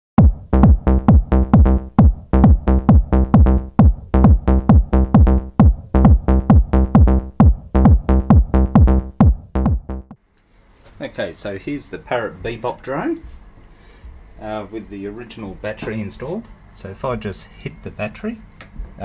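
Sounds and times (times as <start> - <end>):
electronic dance music: 0.2 - 10.2
fast kick drum beat: 0.2 - 10.2
synth tones: 0.2 - 10.2.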